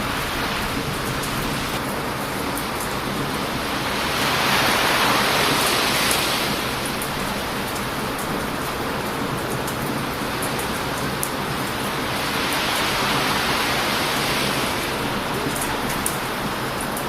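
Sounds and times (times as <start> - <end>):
ocean surf breaking: 0.0 - 17.0.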